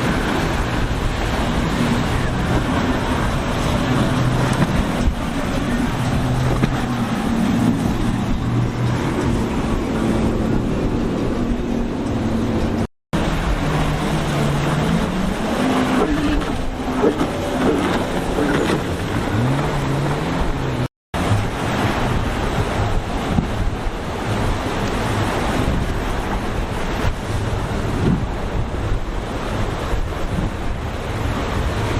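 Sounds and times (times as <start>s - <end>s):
motorboat engines throttling: 0.0s - 31.9s
rush of wind and water: 0.0s - 31.9s.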